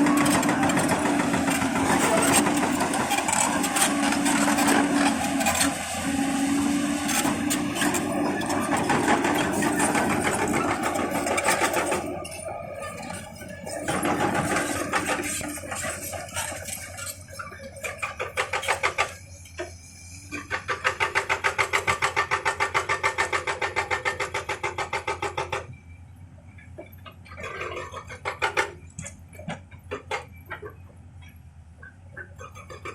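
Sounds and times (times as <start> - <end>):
engine running: 0.0 - 25.2.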